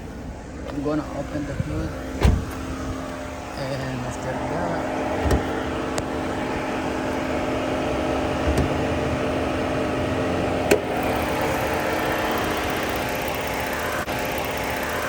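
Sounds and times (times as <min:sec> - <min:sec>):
car idling with fan blowing: 0:00.0 - 0:15.0
soft thump: 0:02.2 - 0:02.7.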